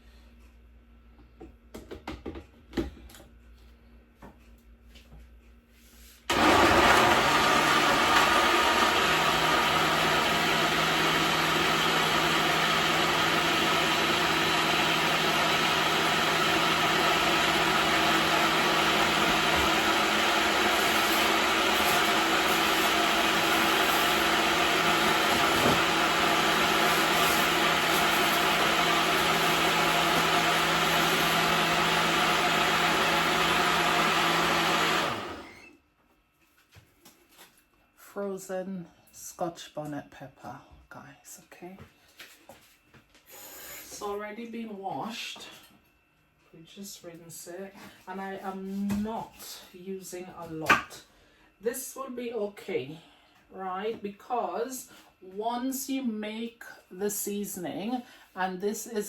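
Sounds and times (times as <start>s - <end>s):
blender running: 6.3s - 35.8s.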